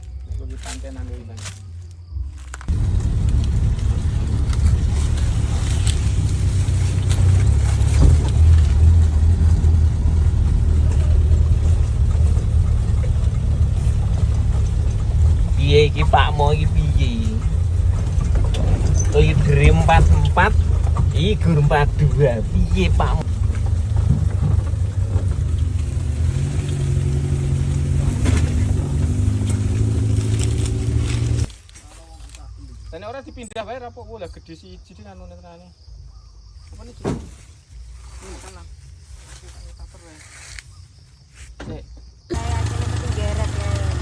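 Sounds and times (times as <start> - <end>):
engine running with low rumble: 0.0 - 33.0, 42.3 - 44.0.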